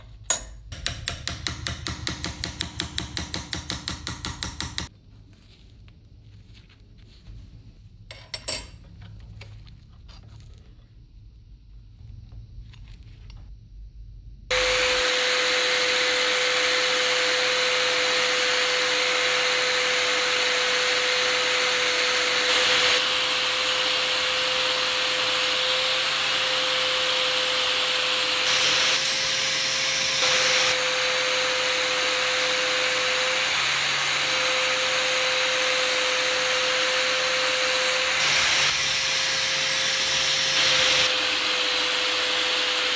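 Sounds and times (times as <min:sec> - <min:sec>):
electric power tool whining: 0:14.5 - 0:42.9.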